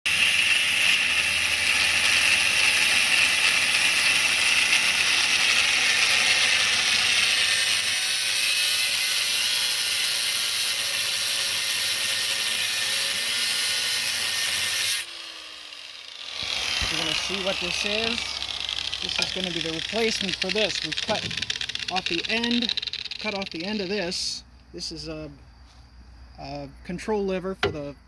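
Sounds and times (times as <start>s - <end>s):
welder arc crackling: 16.4s - 24.0s.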